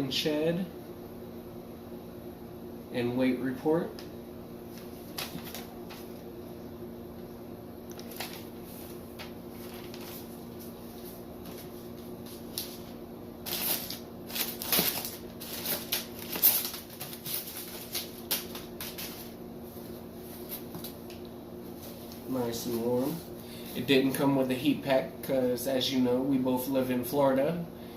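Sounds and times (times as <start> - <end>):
low room hum: 0.0 - 27.9
paper packaging rustling: 4.8 - 6.2, 7.9 - 19.4.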